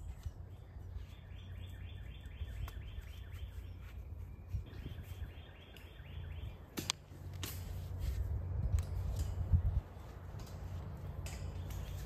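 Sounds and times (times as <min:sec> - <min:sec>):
low outdoor rumble: 0:06.5 - 0:12.0
wire fence clips clicking: 0:06.8 - 0:07.8, 0:08.7 - 0:12.0.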